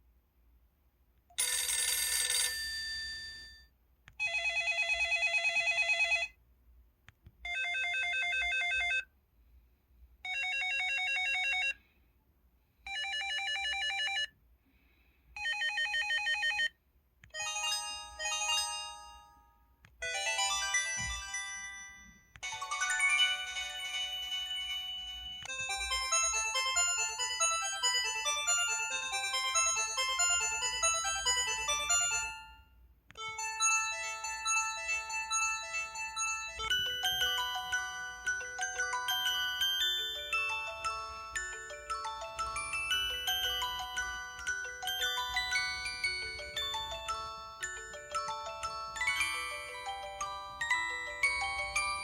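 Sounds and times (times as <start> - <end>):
warbling telephone ring: 1.4 - 3.6
bell chime ringtone: 1.4 - 3.7, 17.4 - 32.7, 33.3 - 52.0
short melodic ringtone: 20.1 - 32.6, 33.4 - 52.0.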